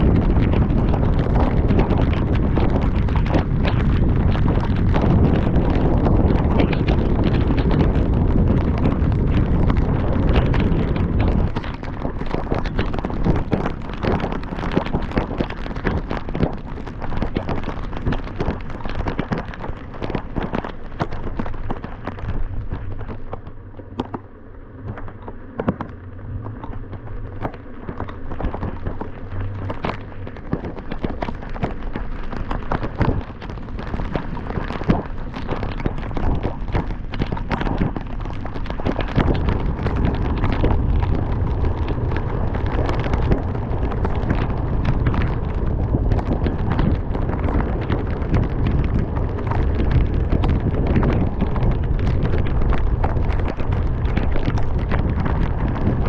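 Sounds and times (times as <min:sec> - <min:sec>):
heavy rain on a car: 0:00.0 - 0:24.2, 0:24.9 - 0:56.0
wind and road noise rumble: 0:00.0 - 0:56.0.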